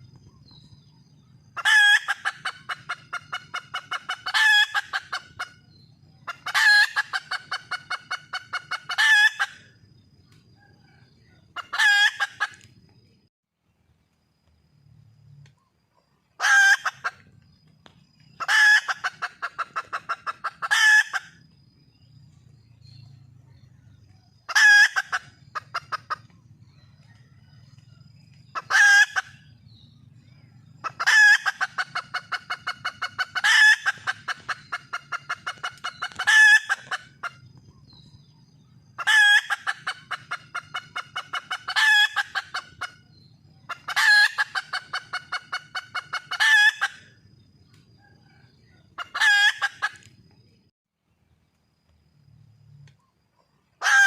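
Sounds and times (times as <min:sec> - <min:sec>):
hen calling with fast clucks: 0:00.0 - 0:09.7, 0:10.6 - 0:12.8, 0:16.3 - 0:17.4, 0:18.3 - 0:21.5, 0:23.5 - 0:47.3, 0:48.0 - 0:50.1, 0:53.8 - 0:54.0.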